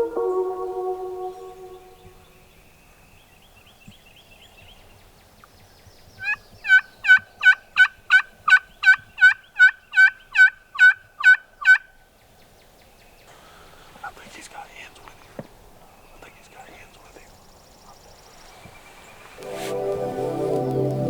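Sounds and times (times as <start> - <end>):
faint small birds chirping: 1.4 - 19.5
turkey yelps: 6.2 - 11.9.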